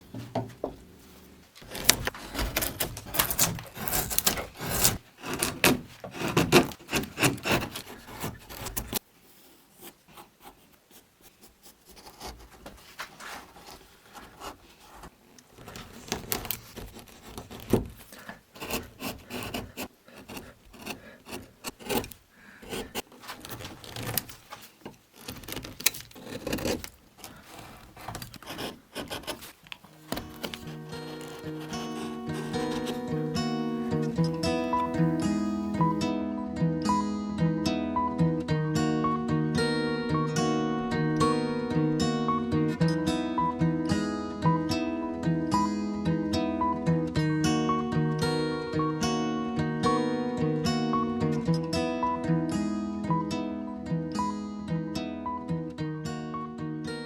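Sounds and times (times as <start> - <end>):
carving tools scraping wood: 1.6 - 9.0, 9.7 - 34.1.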